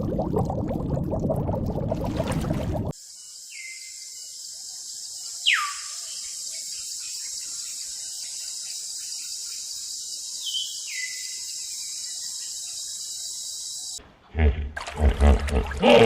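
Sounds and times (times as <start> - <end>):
high insect drone: 3.0 - 14.0.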